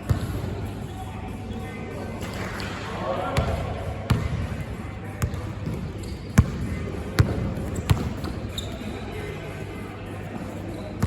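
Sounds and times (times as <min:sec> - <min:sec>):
murmur of voices: 0:00.0 - 0:11.0
basketball bouncing on court floor: 0:03.4 - 0:04.5, 0:05.2 - 0:08.7.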